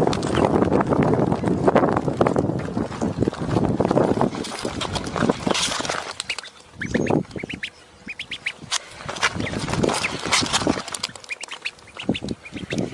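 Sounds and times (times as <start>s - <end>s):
ducks quacking: 5.4s - 12.9s
short high chirping calls: 6.2s - 8.7s, 11.0s - 12.9s.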